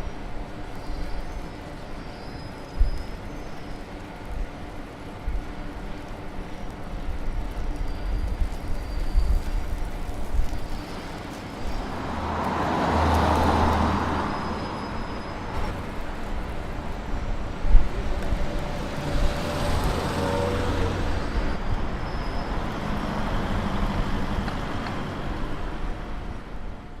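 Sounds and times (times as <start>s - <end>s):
traffic going by: 0.0s - 27.0s
vehicle passing close: 11.8s - 16.4s.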